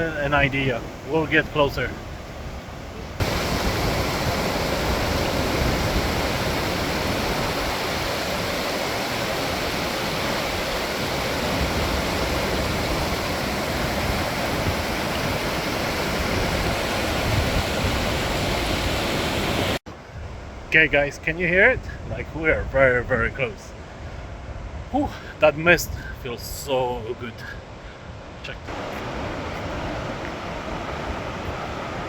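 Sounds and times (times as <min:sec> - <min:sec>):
waterfall roaring: 0:00.0 - 0:19.8, 0:28.7 - 0:32.0.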